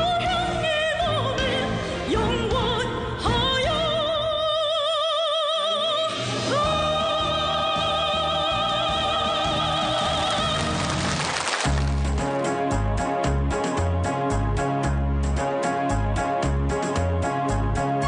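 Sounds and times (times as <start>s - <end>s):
instrumental accompaniment: 9.3s - 18.0s.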